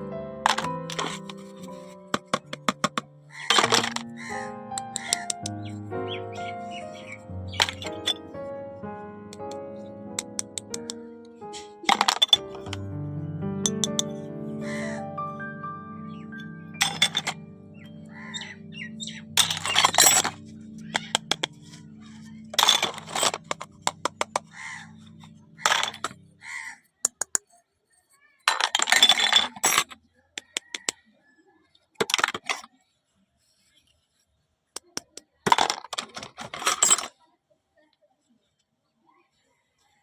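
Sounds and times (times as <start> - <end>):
soft background music: 0.0 - 26.7
sharp clicks and clinks: 0.5 - 4.2, 7.6 - 8.3, 10.2 - 11.0, 11.6 - 12.8, 13.6 - 14.1, 16.8 - 17.4, 19.4 - 21.8, 22.6 - 24.5.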